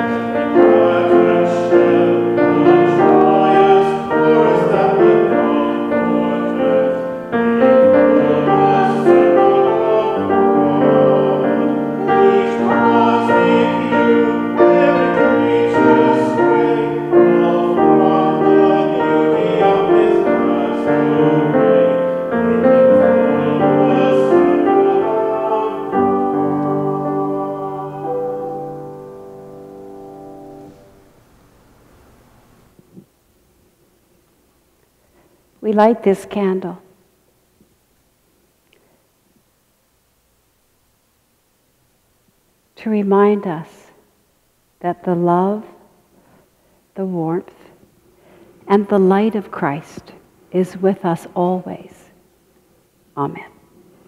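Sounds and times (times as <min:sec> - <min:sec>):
slow piano music: 0:00.0 - 0:31.2.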